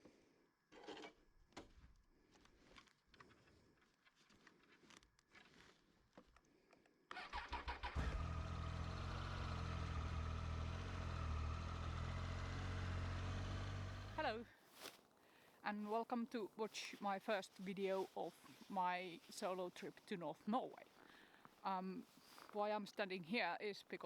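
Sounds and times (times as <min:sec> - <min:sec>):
starter motor cranking: 0:07.1 - 0:14.2
motorcycle engine idling: 0:07.3 - 0:14.4.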